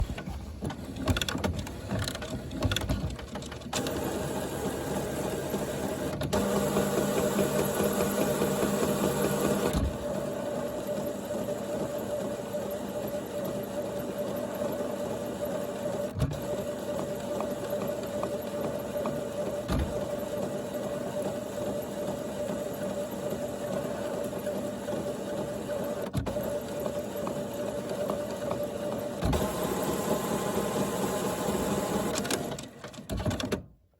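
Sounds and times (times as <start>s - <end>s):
printer mechanism whirring: 0.0s - 33.7s
printer clicks: 27.0s - 33.7s.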